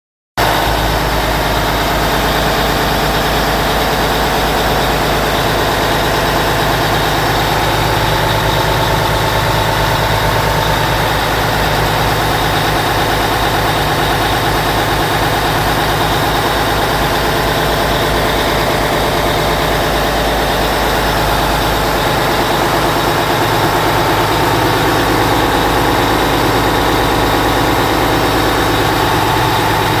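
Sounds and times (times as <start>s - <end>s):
boat engine idling: 0.4s - 30.0s.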